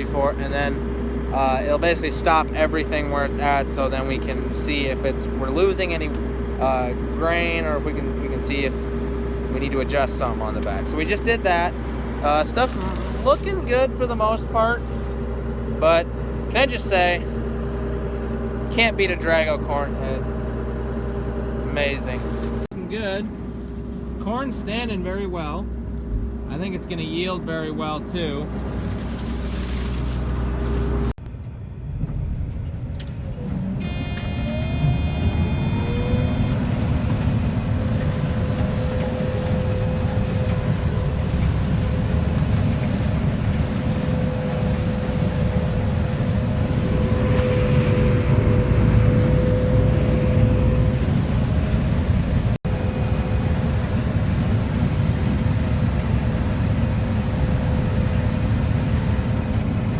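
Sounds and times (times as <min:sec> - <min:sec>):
combine harvester engine drone: 0:00.0 - 0:59.9
machine whine: 0:28.4 - 0:59.9.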